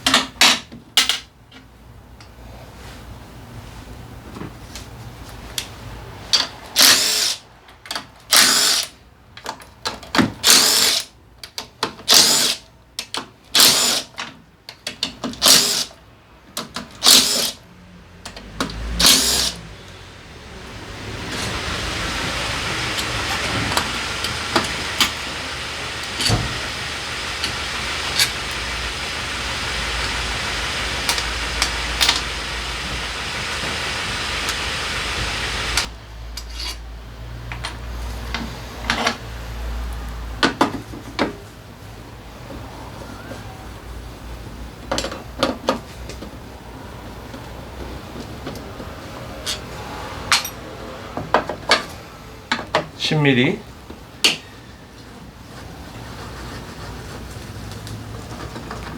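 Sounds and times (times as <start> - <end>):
power tool running: 6.8 - 7.4, 17.0 - 17.6, 18.4 - 35.9.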